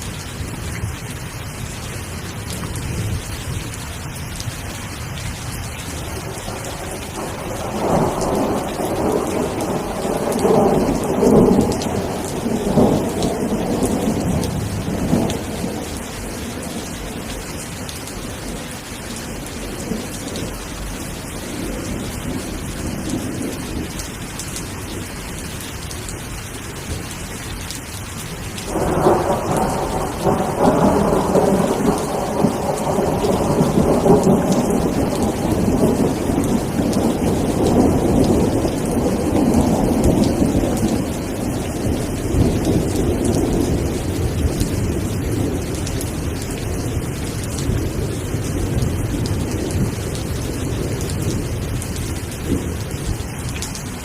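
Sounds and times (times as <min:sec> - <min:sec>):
steady rain falling: 0:00.0 - 0:54.0
thunder rumbling: 0:05.9 - 0:25.1, 0:28.6 - 0:54.0.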